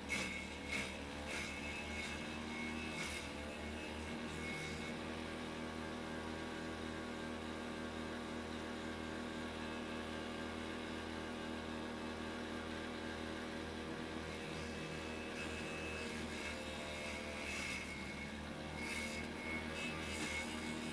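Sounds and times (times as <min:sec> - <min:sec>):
electric motor humming: 0:13.5 - 0:20.9.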